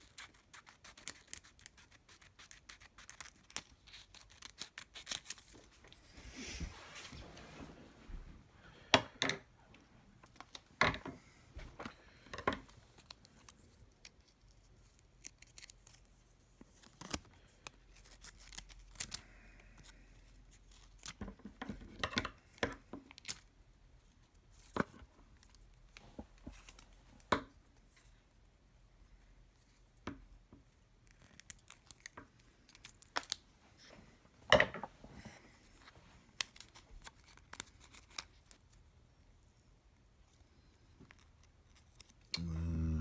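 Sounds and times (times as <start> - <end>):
adhesive strips crinkling: 0.0 - 6.0, 12.9 - 19.3, 31.0 - 33.4, 35.7 - 38.8.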